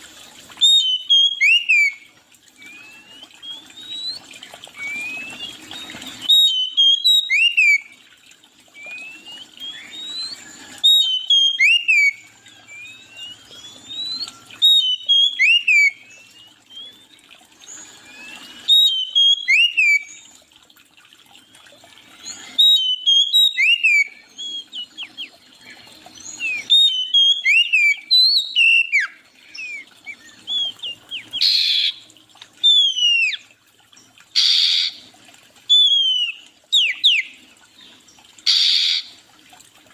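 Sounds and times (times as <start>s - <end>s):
songbird whistling: 0.6s - 8.0s, 8.8s - 17.2s, 18.1s - 20.3s, 22.2s - 25.4s, 26.2s - 32.0s, 32.6s - 33.5s, 34.4s - 35.0s, 35.7s - 37.4s, 38.5s - 39.1s.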